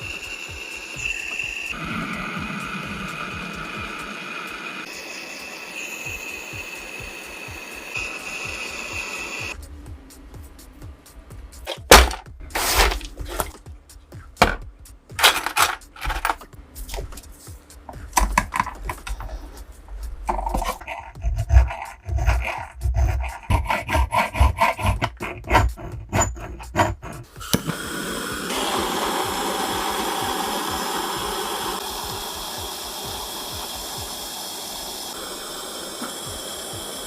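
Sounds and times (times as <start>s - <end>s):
power tool hissing on metal: 0.0s - 9.6s, 27.4s - 37.0s
filing strokes on metal: 20.5s - 27.4s.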